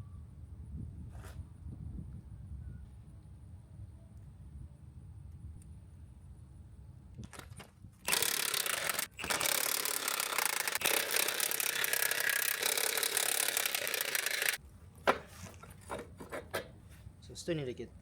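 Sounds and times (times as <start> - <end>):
power wrench rattling: 8.0 - 14.6.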